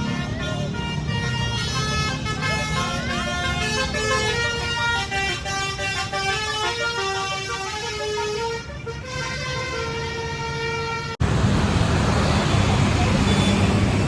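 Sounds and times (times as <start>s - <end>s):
bus horn playing a tune: 0.0s - 11.2s
low bus engine rumble: 0.0s - 14.0s.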